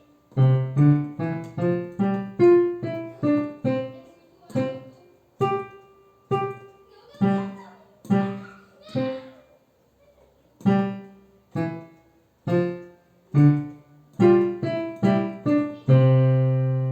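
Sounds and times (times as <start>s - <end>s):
slow melody of single notes: 10.7s - 16.9s.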